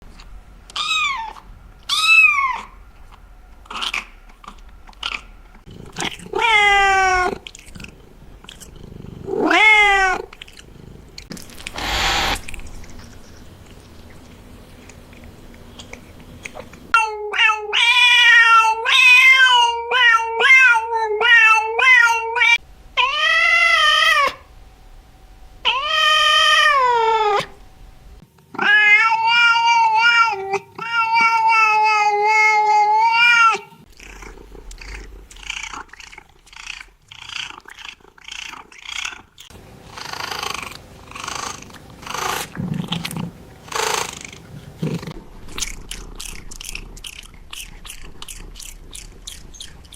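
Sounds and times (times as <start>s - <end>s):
cat meowing: 9.3s - 10.3s, 17.0s - 24.4s, 28.6s - 33.7s
purr-like rasping: 33.9s - 49.9s.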